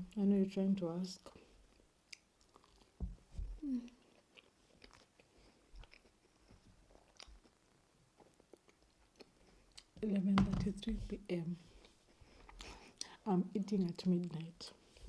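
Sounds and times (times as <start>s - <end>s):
person chewing food: 1.7s - 10.0s, 11.7s - 13.1s
person humming: 3.6s - 4.0s.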